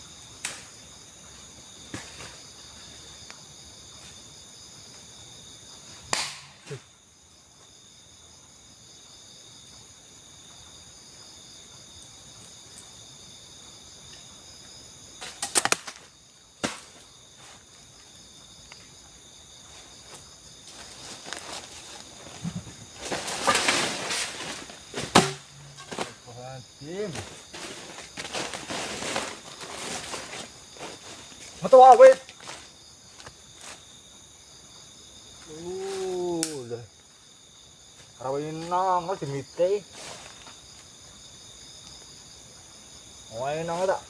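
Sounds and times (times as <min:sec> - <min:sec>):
shrill insect chorus: 0:00.0 - 0:44.0
sharp knocks: 0:25.0 - 0:26.1.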